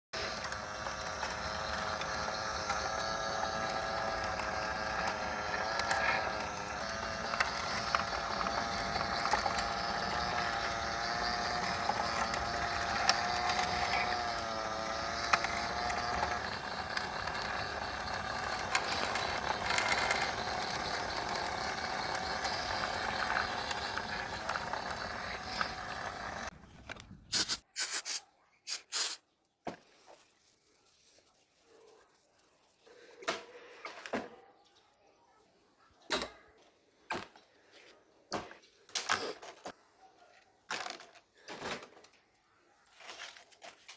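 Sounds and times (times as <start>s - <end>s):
electric fan motor whining: 0.2s - 26.5s.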